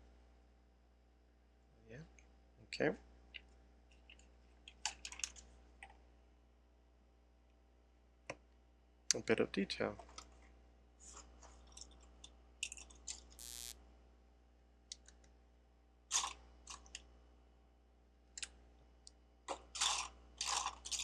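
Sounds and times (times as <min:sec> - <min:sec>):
plastic bricks clicking and clattering: 0:19.5 - 0:21.0.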